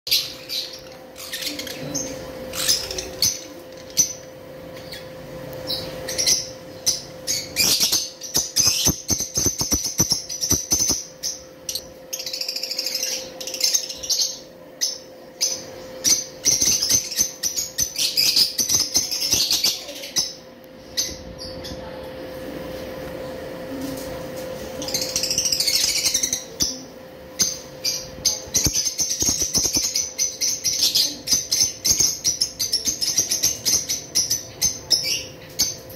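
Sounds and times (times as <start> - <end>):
faint hum: 0.1 - 35.9
small parrots chirping: 5.6 - 20.4, 27.4 - 35.8.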